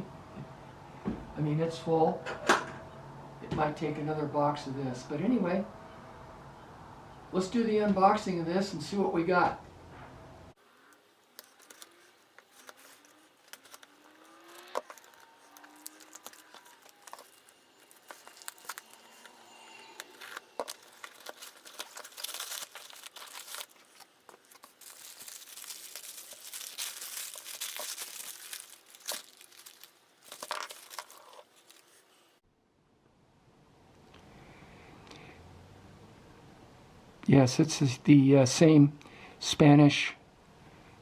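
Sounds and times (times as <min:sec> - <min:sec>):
packaging crinkling and tearing: 0:11.3 - 0:32.0.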